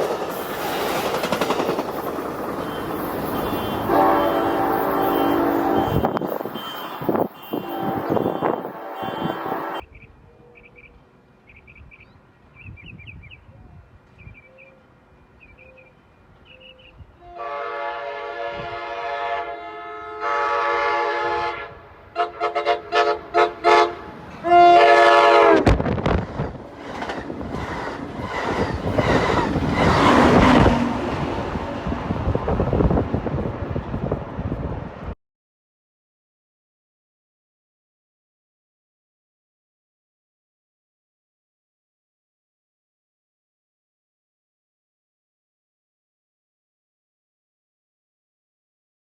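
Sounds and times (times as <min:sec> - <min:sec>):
train wheel and rail noise: 0:00.0 - 0:35.2
train horn blasts and toots: 0:02.6 - 0:09.8, 0:17.2 - 0:26.0.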